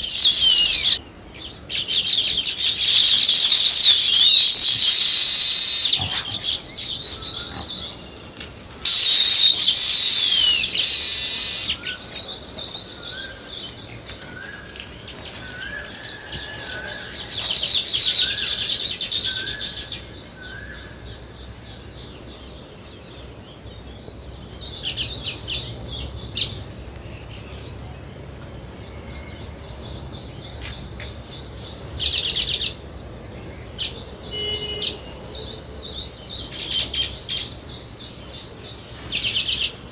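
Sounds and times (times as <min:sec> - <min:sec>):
bird rising whistled notes: 0:00.0 - 0:01.0, 0:02.6 - 0:06.1, 0:08.9 - 0:12.0
songbirds chirping and chattering: 0:00.0 - 0:39.9.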